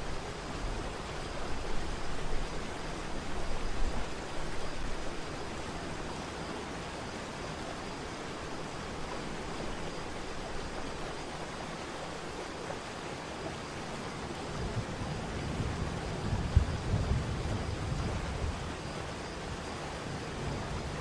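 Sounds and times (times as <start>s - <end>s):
wind rumbling on microphone: 9.1s - 21.0s.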